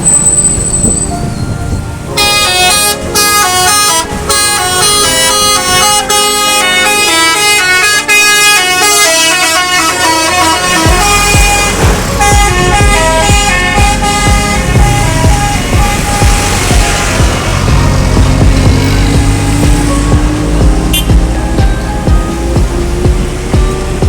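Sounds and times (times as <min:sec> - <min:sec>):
bus musical horn playing tune: 0:00.0 - 0:24.0
deep rapid pulsing: 0:10.3 - 0:24.0.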